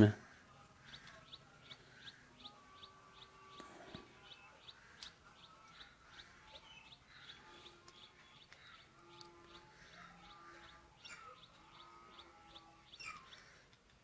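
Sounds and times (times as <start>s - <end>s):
bird chirping: 0.0s - 14.0s
faint clicks: 3.4s - 9.7s, 13.1s - 14.0s.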